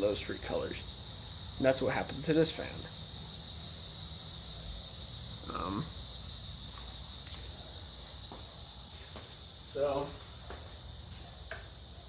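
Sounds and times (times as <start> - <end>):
insect chorus: 0.0 - 12.0.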